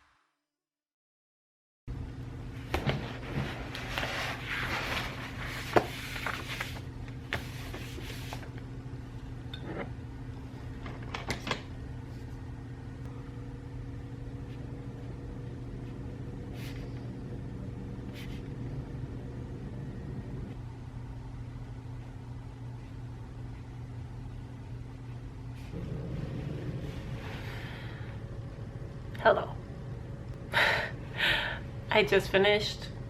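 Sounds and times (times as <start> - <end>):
steady low hum: 1.9 - 33.0
rustling and handling noises: 2.6 - 8.6.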